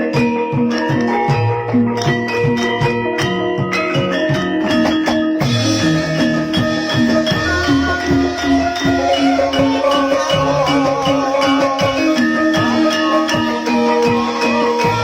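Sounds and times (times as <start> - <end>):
metal keyed percussion notes: 0.0 - 15.0
wavering sustained melody: 5.4 - 15.0.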